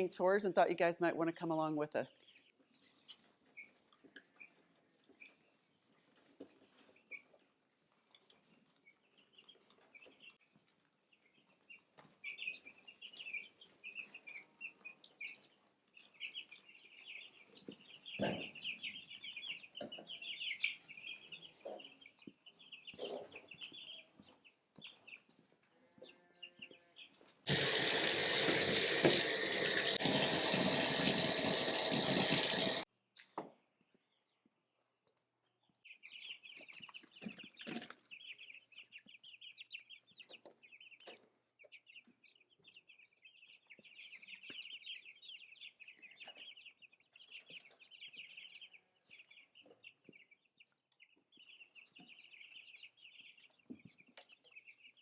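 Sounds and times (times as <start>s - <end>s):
baby chicks peeping: 2.1s - 29.4s, 35.0s - 55.0s
tap water running: 27.5s - 32.8s.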